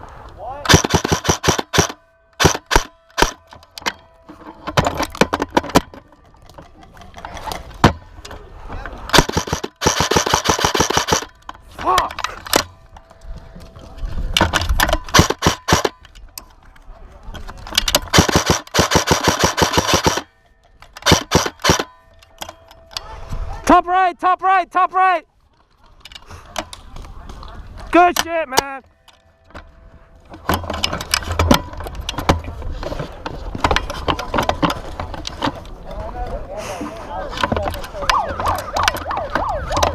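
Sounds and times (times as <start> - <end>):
airsoft gun firing: 0.7 - 3.4, 9.1 - 11.3, 15.1 - 16.0, 18.0 - 20.3, 21.0 - 21.9.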